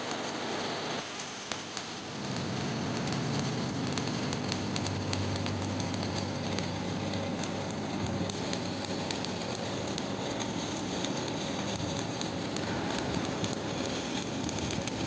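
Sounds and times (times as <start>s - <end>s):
welding arc crackling: 0.0s - 15.0s
low hum: 2.1s - 10.8s
sharp ticks: 2.2s - 15.0s.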